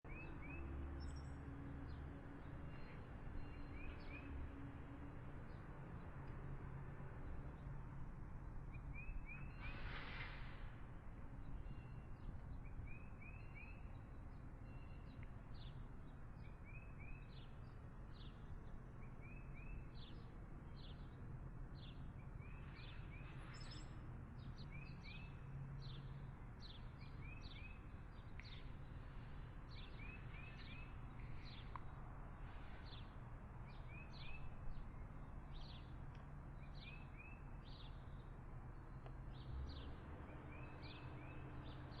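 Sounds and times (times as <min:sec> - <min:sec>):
steady traffic noise: 0:00.0 - 0:42.0
birds chirping: 0:11.4 - 0:32.0, 0:32.7 - 0:36.0.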